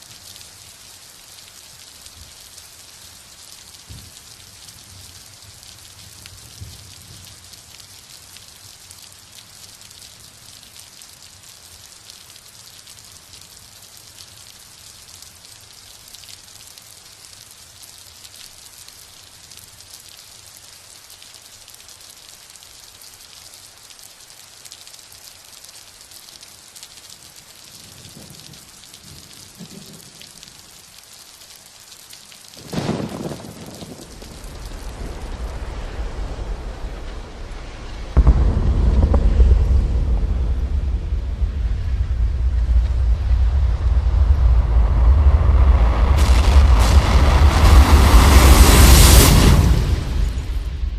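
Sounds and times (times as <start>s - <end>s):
steady rain hiss: 0.0s - 50.9s
loud low rumble: 35.2s - 50.9s.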